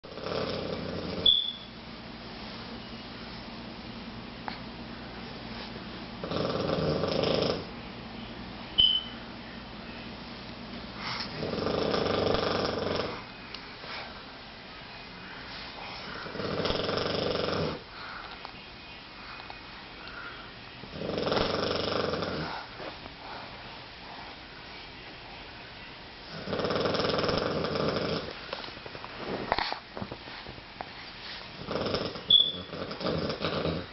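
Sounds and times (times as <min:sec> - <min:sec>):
pet snoring: 0:00.1 - 0:01.3, 0:06.2 - 0:07.7, 0:11.3 - 0:13.2, 0:16.2 - 0:17.8, 0:20.9 - 0:22.7, 0:26.3 - 0:28.4, 0:31.6 - 0:33.9
short high-pitched beep: 0:01.3 - 0:01.8, 0:08.8 - 0:09.2, 0:32.3 - 0:32.6.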